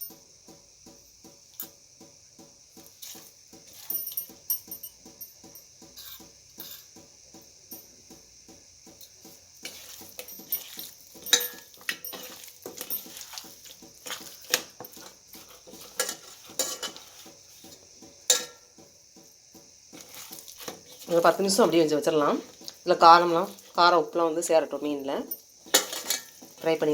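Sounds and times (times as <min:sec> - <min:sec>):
utensils clinking and scraping in bowl: 0:02.8 - 0:06.9, 0:09.0 - 0:18.9, 0:19.9 - 0:26.9.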